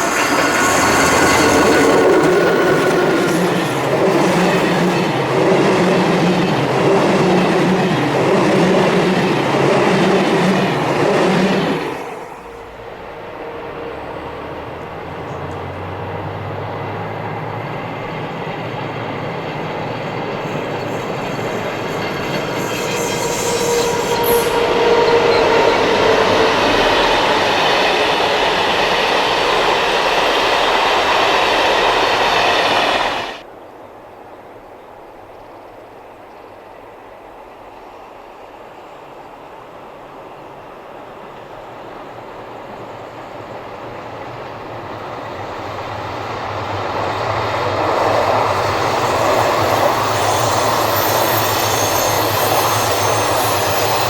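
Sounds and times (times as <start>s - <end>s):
train approaching: 0.0s - 54.0s.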